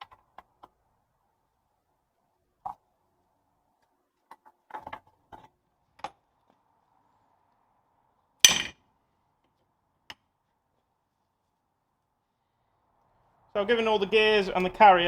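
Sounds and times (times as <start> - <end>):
loud metallic knock with ring: 8.5 - 8.7
metal parts clinking on workbench: 8.5 - 8.7.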